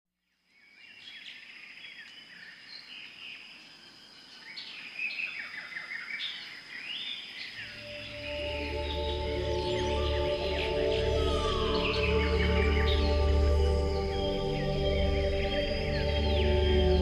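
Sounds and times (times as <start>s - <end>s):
songbirds chirping: 0.3s - 17.0s
high-pitched whine: 7.7s - 17.0s
soft music with low bass: 7.8s - 17.0s.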